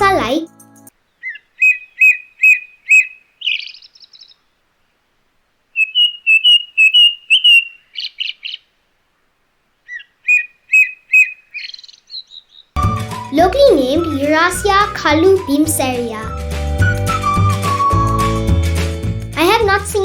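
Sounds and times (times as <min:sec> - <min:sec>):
blackbird singing: 0:01.0 - 0:04.4, 0:05.8 - 0:08.6, 0:09.9 - 0:13.3.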